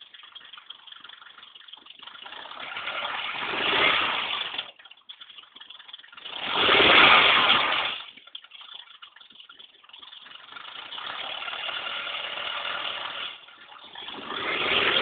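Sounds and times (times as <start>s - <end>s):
car engine revving: 2.3s - 4.6s, 6.2s - 8.1s, 10.5s - 15.0s.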